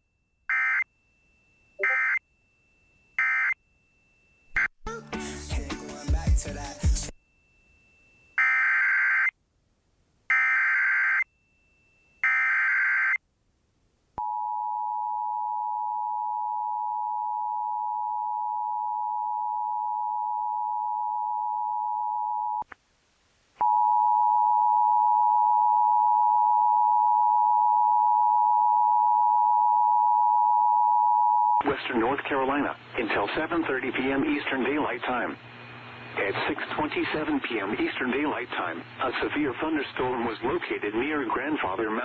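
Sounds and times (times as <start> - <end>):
steady alert tone: 1.8 - 2.2
two-tone alert signal: 1.8 - 2.2.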